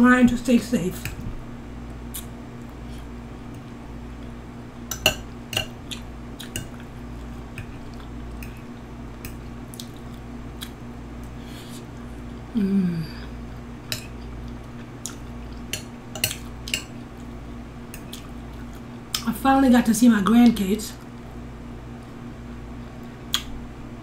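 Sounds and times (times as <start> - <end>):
low hum: 0.0 - 24.0
chewing mouth clicks and smacks: 2.1 - 2.8, 5.8 - 6.9, 9.3 - 10.8, 14.2 - 16.9, 18.0 - 19.2, 23.3 - 23.5.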